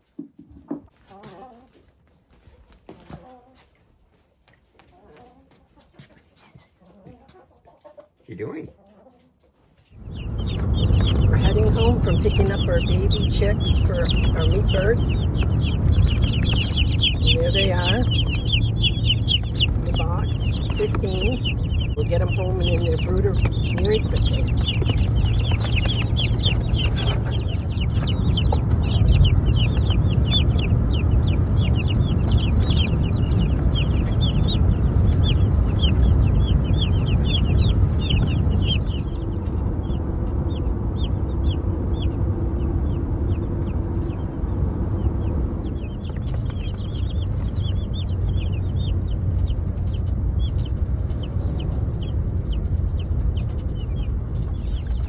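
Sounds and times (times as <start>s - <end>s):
chicks peeping: 0.1s - 55.0s
car rumbling on road: 10.0s - 55.0s.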